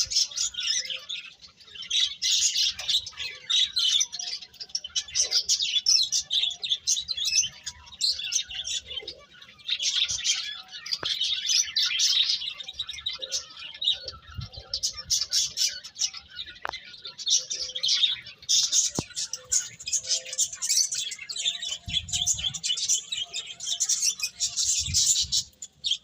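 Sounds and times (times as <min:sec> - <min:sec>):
small birds chirping: 0:00.0 - 0:26.0.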